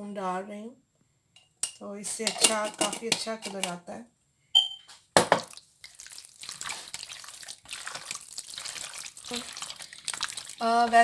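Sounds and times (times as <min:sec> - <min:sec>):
wet mixing of marinade: 0:05.4 - 0:11.0.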